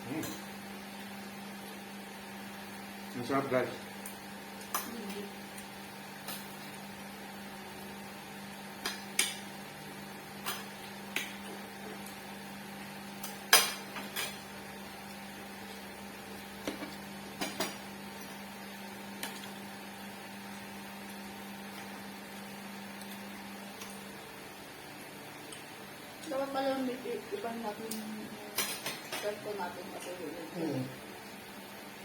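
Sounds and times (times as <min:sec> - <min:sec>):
utensils and dishes clinking: 0:28.5 - 0:29.4.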